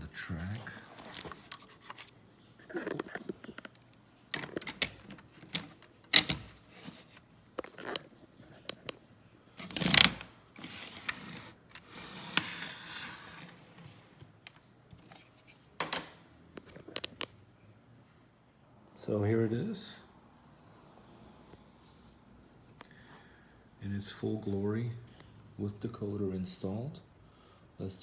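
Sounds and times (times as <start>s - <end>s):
soft rustle: 0.3s - 4.1s.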